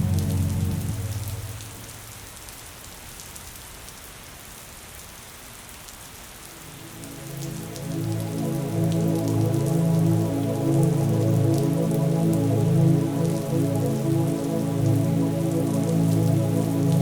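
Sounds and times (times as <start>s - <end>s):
soft low sustained music: 0.0s - 1.9s, 6.6s - 17.0s
steady rain pattering: 0.0s - 17.0s.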